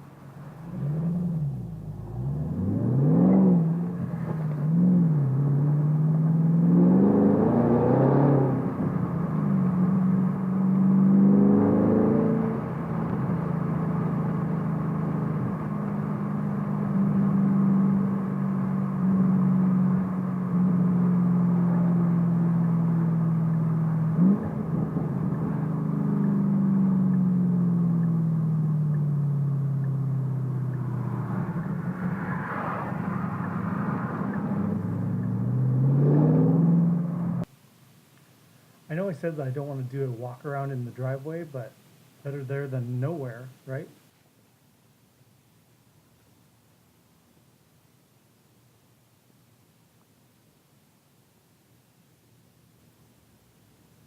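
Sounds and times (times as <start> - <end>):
car engine running: 0.0 - 37.5.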